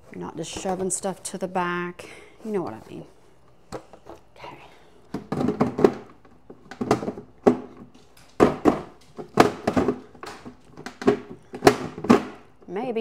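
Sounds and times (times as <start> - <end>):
containers knocking in a fridge: 5.2 - 12.5.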